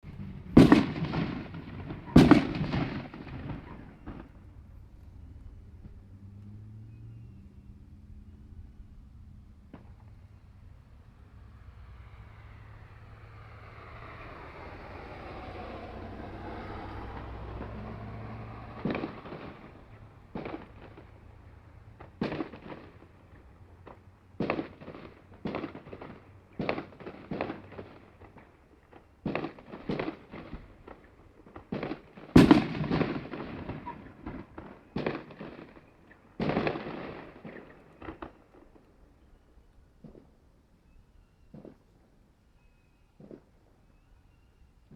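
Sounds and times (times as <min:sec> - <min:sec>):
fireworks bangs with echo: 0:00.2 - 0:04.7, 0:14.0 - 0:39.3, 0:41.4 - 0:41.9.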